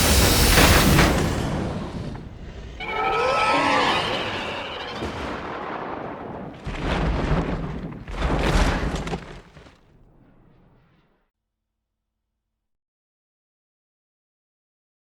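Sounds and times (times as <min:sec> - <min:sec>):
heavy booms: 0:00.0 - 0:11.0
rumbling explosion: 0:00.0 - 0:11.0.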